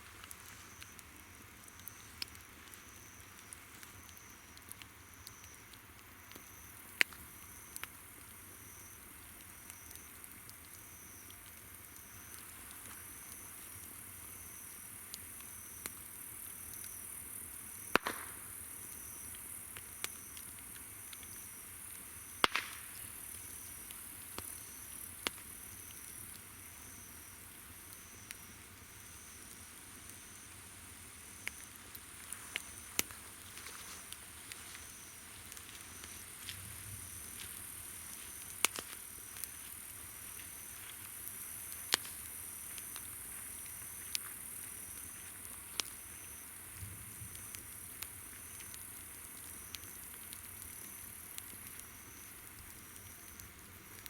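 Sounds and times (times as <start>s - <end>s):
campfire crackling and popping: 0.0s - 54.0s
insect hiss: 0.0s - 54.0s
insect chirping: 10.8s - 53.5s.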